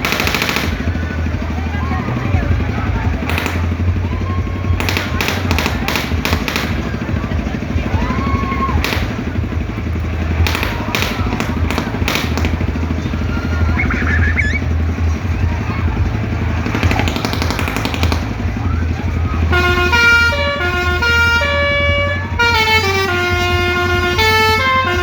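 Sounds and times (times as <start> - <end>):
faint crowd voices: 0.0 - 25.0
ride machinery engine rumble: 0.0 - 25.0
sharp clacks: 3.2 - 4.0, 4.8 - 7.0, 10.0 - 14.8, 16.2 - 18.8
people crying out: 3.8 - 5.5, 7.0 - 9.6, 13.0 - 16.1.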